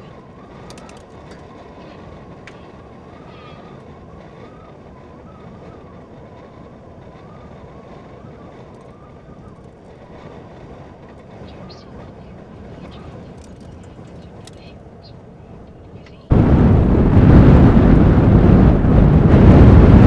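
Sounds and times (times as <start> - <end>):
blizzard wind roaring: 0.0 - 20.0
thin wind whistle: 0.0 - 20.0.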